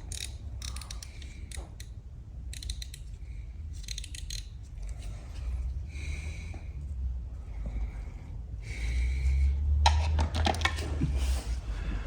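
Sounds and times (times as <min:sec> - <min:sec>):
ratchet wrench clicking: 0:00.0 - 0:03.2, 0:03.8 - 0:04.6
steady low hum: 0:00.0 - 0:10.0.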